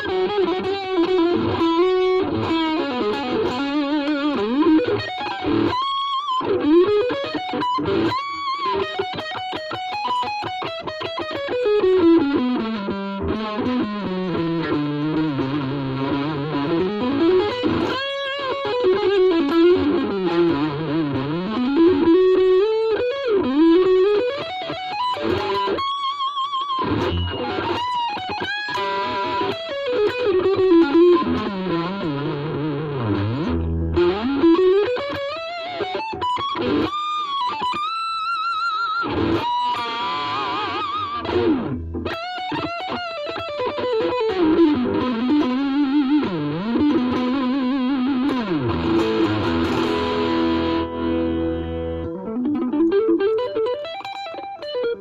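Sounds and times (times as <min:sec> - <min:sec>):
distorted electric guitar melody: 0:00.0 - 0:55.0.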